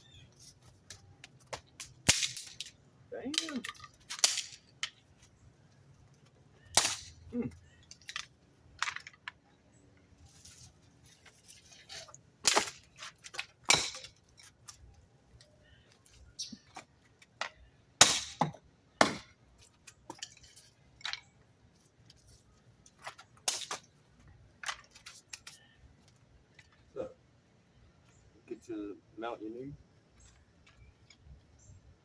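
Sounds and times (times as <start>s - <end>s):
dry sticks cracking: 0.5s - 5.4s.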